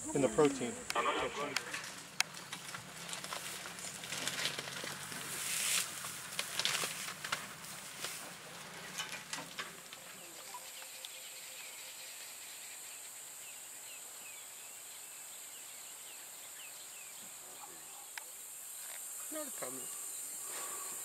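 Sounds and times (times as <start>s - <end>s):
insects droning: 0.0s - 21.0s
sharp clicks and rustles: 0.8s - 10.3s.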